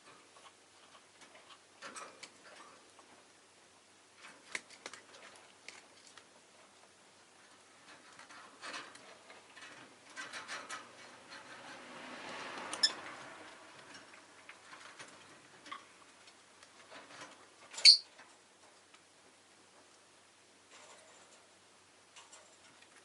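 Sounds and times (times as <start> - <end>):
street noise: 11.0 - 14.4
bird chirping: 17.8 - 18.1.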